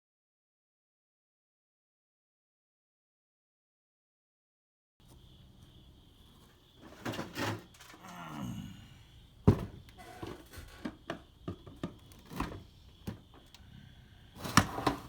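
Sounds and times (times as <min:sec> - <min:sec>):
objects clunking and knocking: 0:06.2 - 0:13.6, 0:14.3 - 0:15.0.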